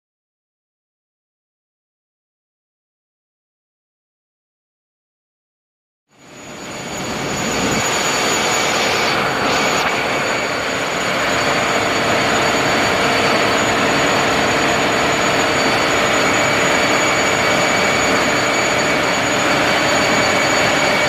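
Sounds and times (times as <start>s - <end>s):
constant machine whine: 6.2s - 21.0s
engine-room machinery running: 6.2s - 21.0s.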